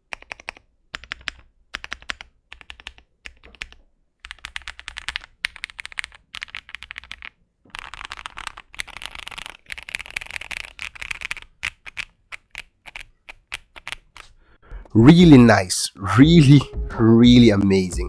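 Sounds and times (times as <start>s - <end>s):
mechanical keyboard typing: 0.1s - 14.2s.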